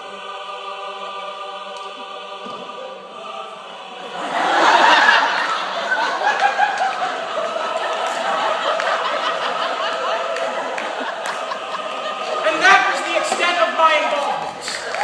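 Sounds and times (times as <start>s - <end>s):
audience laughing: 3.9s - 15.0s.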